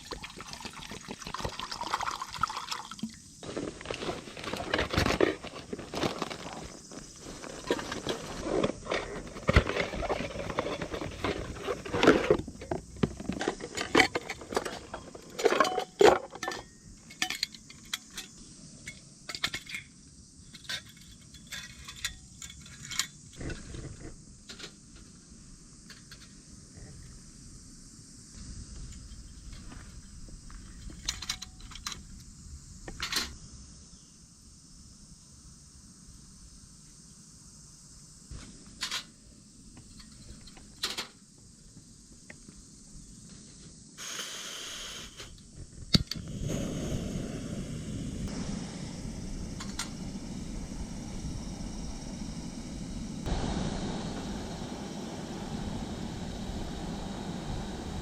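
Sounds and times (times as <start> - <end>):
faint steady hiss: 0.0 - 58.0
gas hissing from valve: 44.0 - 58.0.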